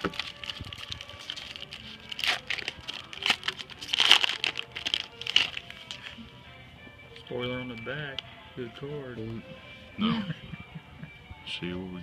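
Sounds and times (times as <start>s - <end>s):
foil wrapper tearing and crinkling: 0.0s - 6.2s.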